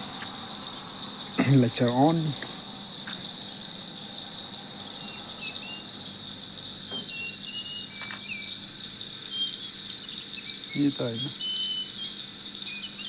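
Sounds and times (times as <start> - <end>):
insect drone: 0.0 - 13.0
faint bird chirps: 3.3 - 13.0.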